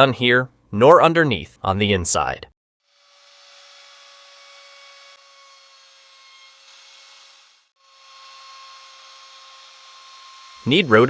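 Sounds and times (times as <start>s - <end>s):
router cutting wood: 2.9s - 11.0s.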